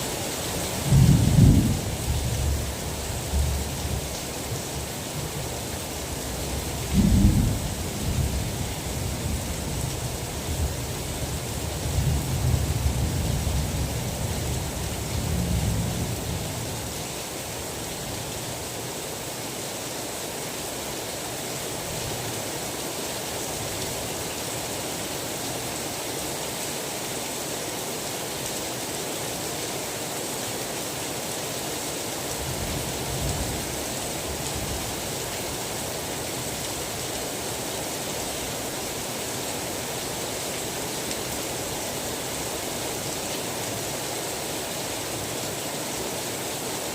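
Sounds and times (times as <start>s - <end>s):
heavy rain: 0.0s - 46.9s.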